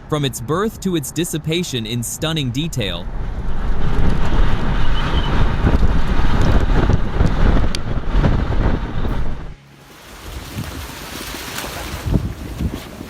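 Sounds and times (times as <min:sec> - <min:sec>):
wind buffeting microphone: 0:02.6 - 0:09.6, 0:11.7 - 0:13.0.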